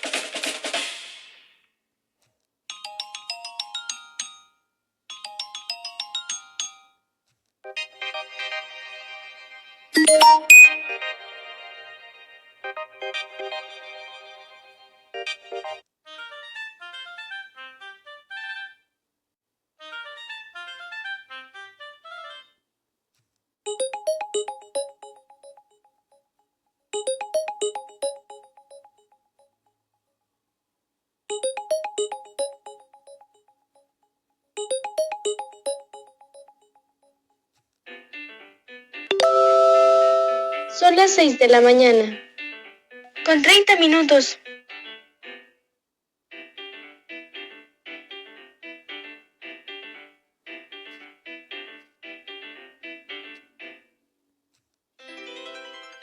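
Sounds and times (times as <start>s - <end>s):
fuller phone tone: 10.0s - 11.0s, 39.1s - 41.0s
marimba-like phone tone: 10.0s - 11.1s, 23.7s - 25.6s, 27.0s - 28.9s, 31.3s - 33.3s, 34.6s - 36.6s, 39.1s - 41.0s
smartphone ringtone melody: 10.0s - 11.3s, 23.7s - 25.8s, 27.0s - 29.1s, 31.3s - 33.5s, 34.6s - 36.8s, 39.1s - 41.8s.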